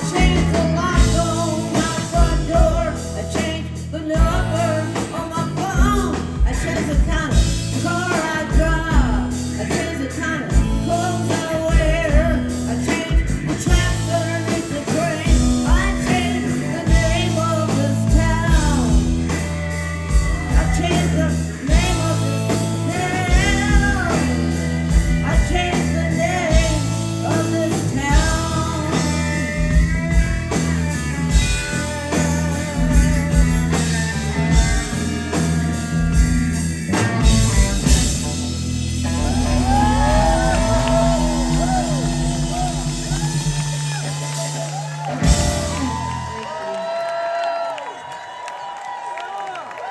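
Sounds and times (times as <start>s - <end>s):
person singing: 0.0s - 30.2s, 39.1s - 47.1s
bending lead guitar lines: 0.0s - 46.4s
drums on a steady beat: 0.0s - 46.4s
bass guitar: 0.0s - 47.2s
electric guitars: 0.0s - 48.0s.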